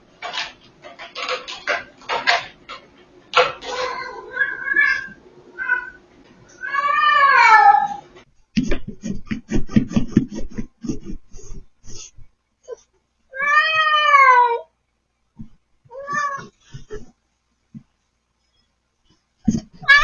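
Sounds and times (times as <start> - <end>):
cat meowing: 3.6 - 8.0, 13.3 - 14.7, 15.9 - 16.5, 19.8 - 20.0.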